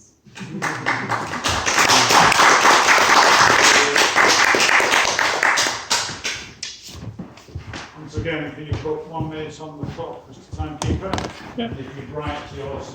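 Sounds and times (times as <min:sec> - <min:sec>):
people applauding: 0:00.3 - 0:06.8.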